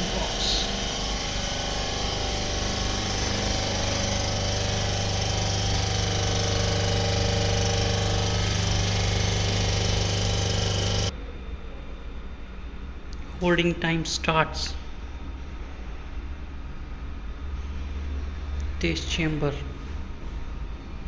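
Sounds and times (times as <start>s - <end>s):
vacuum pump humming: 0.0s - 11.1s.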